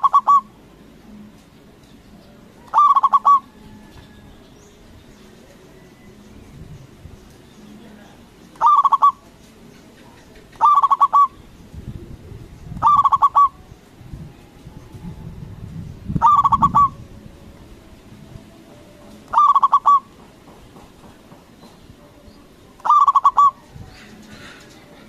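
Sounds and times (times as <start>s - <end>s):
dove cooing: 0.0s - 1.4s, 2.2s - 4.3s, 8.6s - 13.8s, 16.1s - 17.4s, 19.0s - 20.2s, 22.8s - 25.0s.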